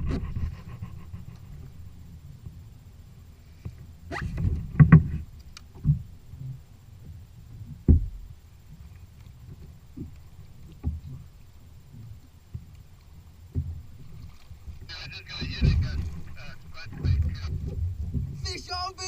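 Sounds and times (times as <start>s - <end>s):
knocks on a kayak: 7.8s - 8.2s
low rumble: 14.6s - 18.9s.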